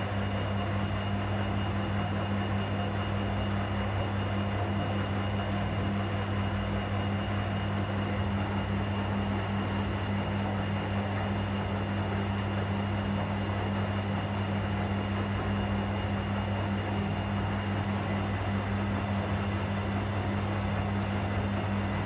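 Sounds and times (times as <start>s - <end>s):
washing machine motor hum: 0.0s - 22.0s.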